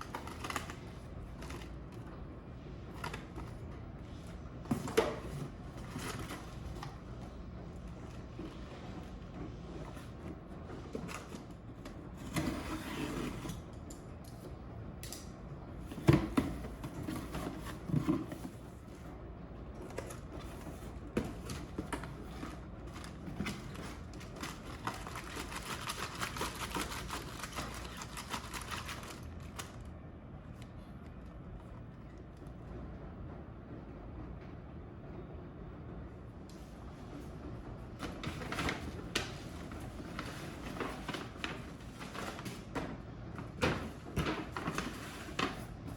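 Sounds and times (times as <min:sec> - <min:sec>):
packaging rustling: 0:20.0 - 0:29.9.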